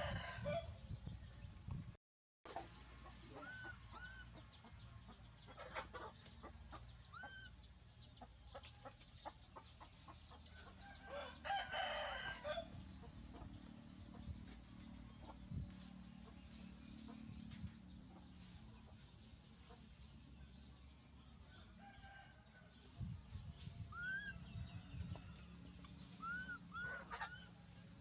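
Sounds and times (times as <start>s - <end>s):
rooster crowing: 10.8s - 12.7s.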